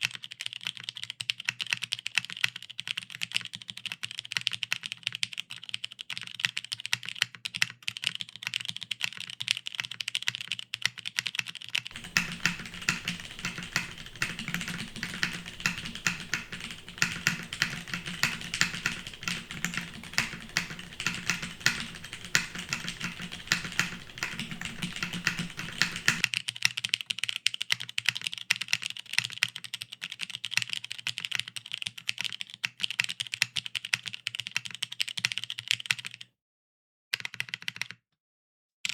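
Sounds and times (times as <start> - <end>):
mechanical keyboard typing: 12.0 - 26.2.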